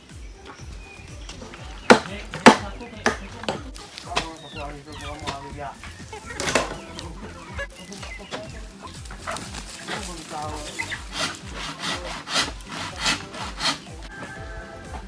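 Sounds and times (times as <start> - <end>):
background music: 0.0 - 15.0
hand saw cutting wood: 1.2 - 4.4, 9.2 - 14.2.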